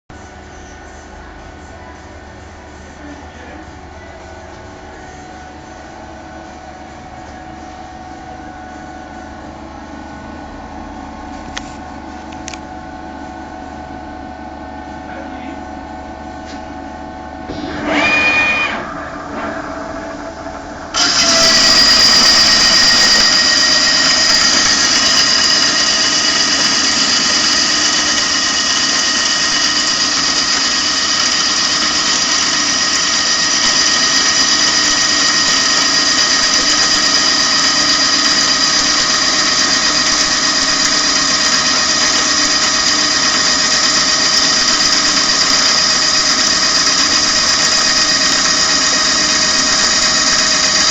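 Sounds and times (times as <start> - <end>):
lathe rising whine: 15.8 - 50.9
lathe cutting noise: 17.4 - 50.9
high-pitched ringing tones: 17.5 - 27.2.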